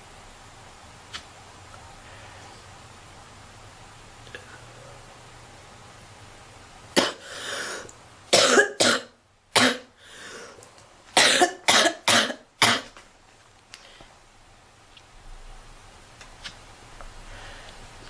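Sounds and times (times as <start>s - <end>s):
woman coughing harshly: 7.0s - 7.2s, 8.3s - 9.9s, 11.2s - 13.0s.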